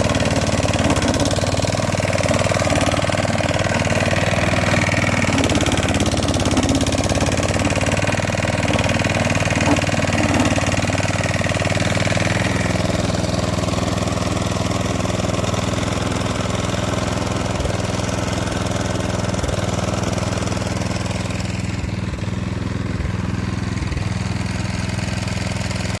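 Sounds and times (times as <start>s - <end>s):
lawn mower running: 0.0s - 26.0s.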